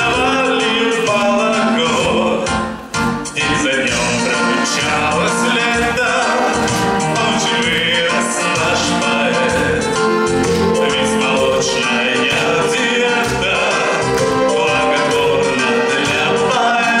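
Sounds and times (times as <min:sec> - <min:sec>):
instrumental accompaniment: 0:00.0 - 0:17.0.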